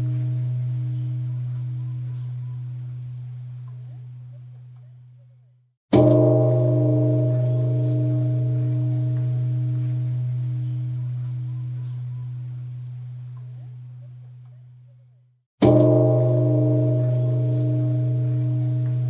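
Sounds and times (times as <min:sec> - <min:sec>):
temple bell ringing: 0:00.0 - 0:04.2, 0:05.9 - 0:13.6, 0:15.6 - 0:19.0.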